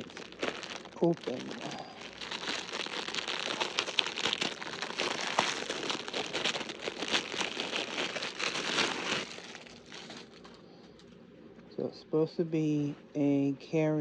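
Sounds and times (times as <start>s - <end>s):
plastic packaging crinkling: 0.0s - 11.2s.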